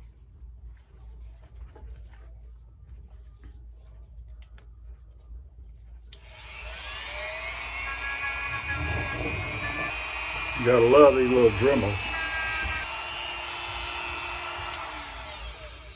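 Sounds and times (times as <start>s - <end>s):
rotary tool wire brush whine: 6.2s - 15.9s.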